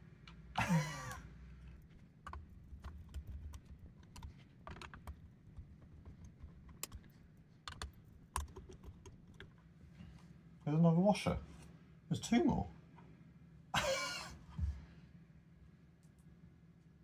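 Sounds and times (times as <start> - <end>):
small metal parts clicking: 1.8 - 9.6.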